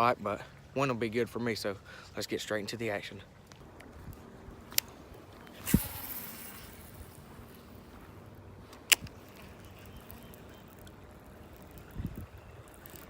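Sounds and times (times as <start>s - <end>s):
reel click: 4.7s - 7.8s, 8.7s - 13.0s
line running off reel: 4.7s - 13.0s
fishing rod swish: 5.4s - 7.8s.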